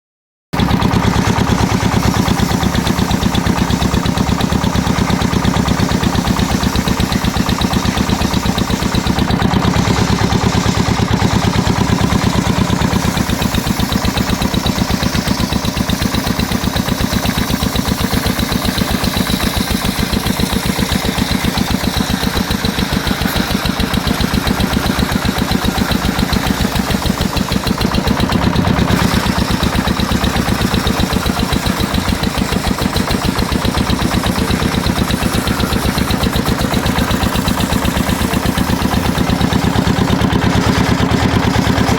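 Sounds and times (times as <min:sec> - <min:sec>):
chainsaw engine running: 0:00.6 - 0:41.9.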